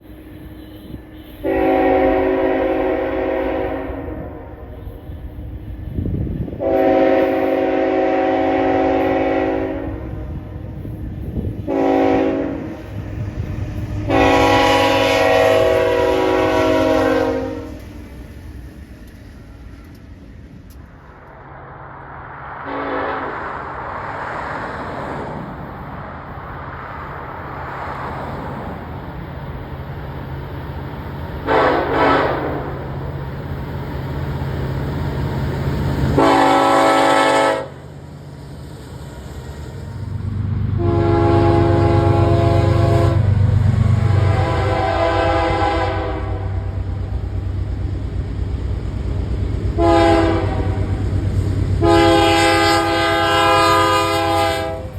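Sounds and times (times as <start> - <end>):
train rumble and rail noise: 0.0 - 54.9
locomotive air horn: 0.3 - 5.3, 6.6 - 10.8, 11.6 - 13.0, 13.7 - 18.0, 22.6 - 23.5, 31.4 - 32.8, 36.0 - 37.8, 40.7 - 46.9, 49.8 - 51.0, 51.8 - 54.9
brief horn toots: 0.5 - 5.0.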